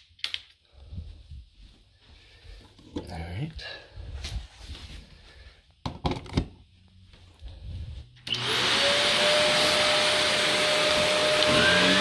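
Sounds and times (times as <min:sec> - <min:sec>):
vacuum cleaner motor whine: 0:08.3 - 0:12.0.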